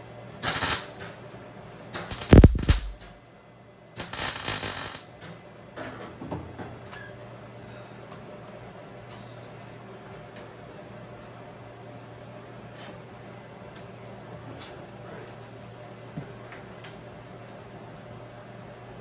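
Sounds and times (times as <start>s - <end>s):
welder bursts on thin steel: 0.4s - 1.0s, 2.1s - 3.1s, 4.0s - 5.1s.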